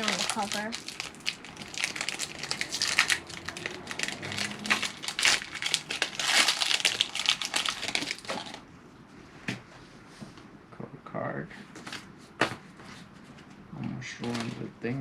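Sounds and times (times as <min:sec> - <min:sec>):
foil wrapper crinkling: 0:00.0 - 0:08.6, 0:14.2 - 0:14.6.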